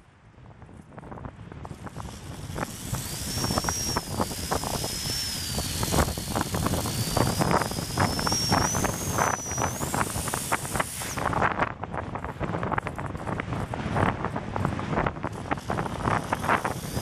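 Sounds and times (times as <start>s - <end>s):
wind buffeting microphone: 0.0s - 17.0s
rc helicopter motor whine: 1.6s - 17.0s.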